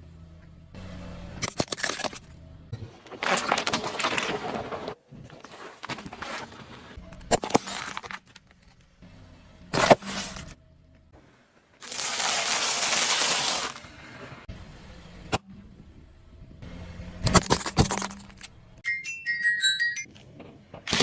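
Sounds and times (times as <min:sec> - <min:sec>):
brittle things crunching: 0:01.4 - 0:02.3, 0:17.2 - 0:18.5.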